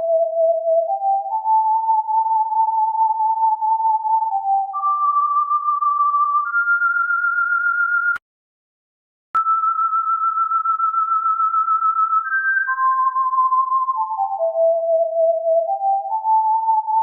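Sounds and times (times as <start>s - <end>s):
electronic sine tone: 9.4s - 17.0s.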